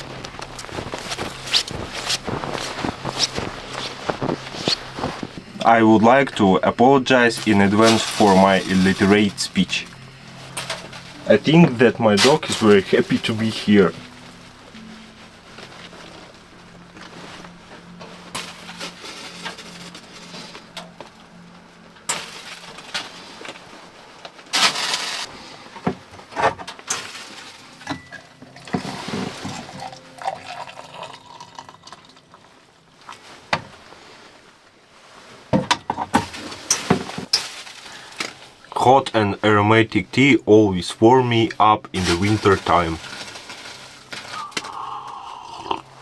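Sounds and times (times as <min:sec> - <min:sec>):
water pouring: 0:00.0 - 0:20.8, 0:26.8 - 0:32.7, 0:41.9 - 0:46.0
cup and pot clinking: 0:27.8 - 0:32.2.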